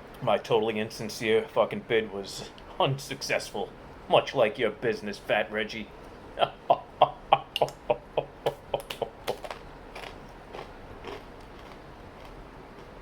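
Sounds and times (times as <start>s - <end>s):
person chewing crunchy chips: 6.4s - 13.0s.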